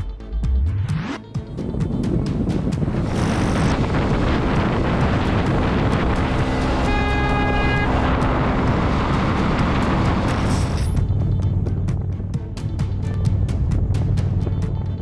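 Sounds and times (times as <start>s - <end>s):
vehicle wind and road noise: 0.2s - 15.0s
vehicle horn: 5.4s - 11.6s.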